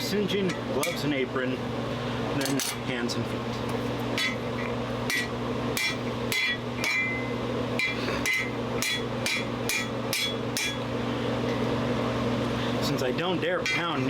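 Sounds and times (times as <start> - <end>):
steady low hum: 0.0 - 14.0
hammer striking steel on anvil: 4.2 - 4.4, 5.1 - 10.9, 13.6 - 14.0.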